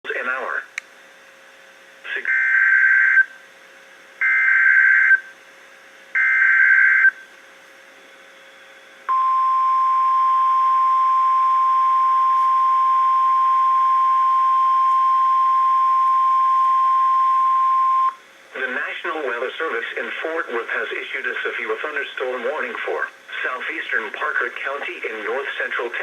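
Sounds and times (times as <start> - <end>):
steady alarm beep: 9.1 - 18.2.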